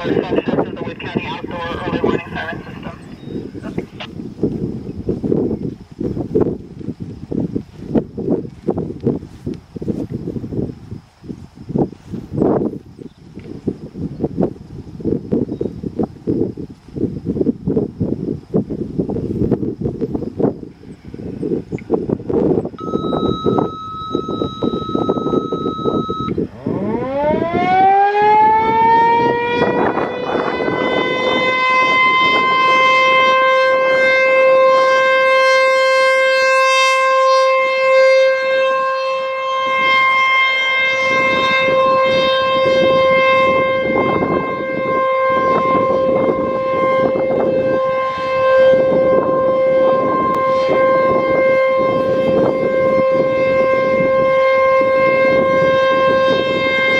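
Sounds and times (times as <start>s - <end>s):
warning siren: 0.0s - 5.6s, 19.4s - 56.9s.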